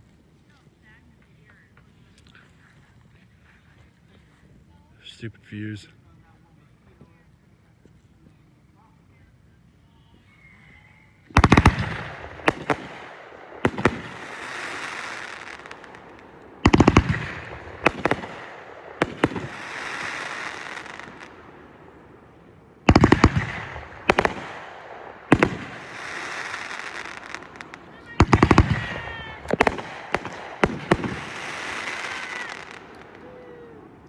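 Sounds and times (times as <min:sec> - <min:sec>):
fireworks crackling and fizzing: 0:11.1 - 0:34.0
fireworks bangs: 0:11.3 - 0:34.0.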